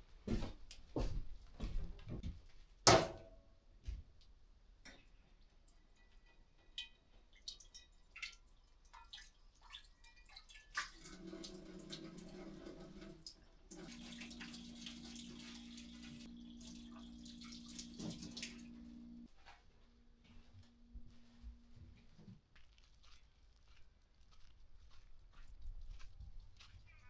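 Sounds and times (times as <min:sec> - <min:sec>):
water running from a tap: 0:07.3 - 0:19.3
small pump humming: 0:11.1 - 0:19.3.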